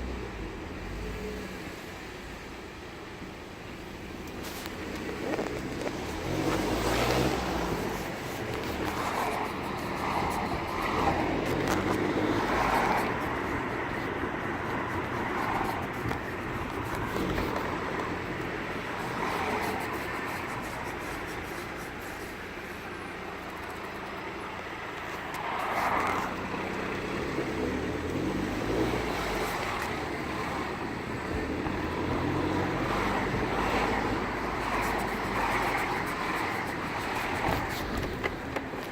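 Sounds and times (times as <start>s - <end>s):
car road and engine rumble: 0.0s - 38.9s
squeaky grinding car wheel: 4.4s - 38.9s.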